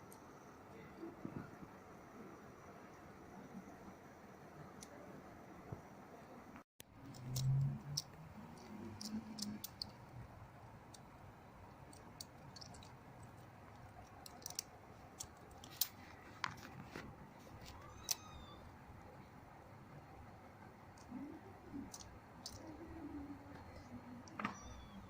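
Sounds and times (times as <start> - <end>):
kittens clicking and scratching: 6.9 - 11.1, 11.7 - 18.4, 20.9 - 25.0.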